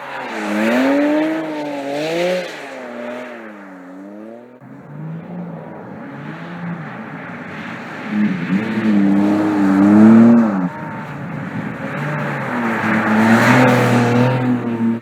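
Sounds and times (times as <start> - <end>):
car engine running hard: 0.0 - 15.0
tyre squeal: 4.7 - 15.0.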